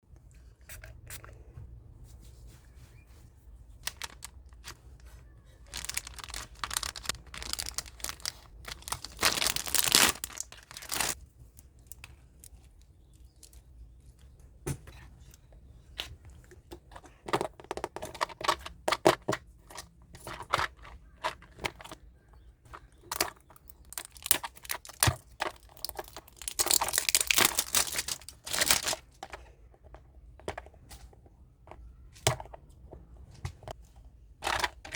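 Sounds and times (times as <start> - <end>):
plastic packaging crinkling: 3.8 - 11.2, 23.0 - 29.3, 34.4 - 34.9.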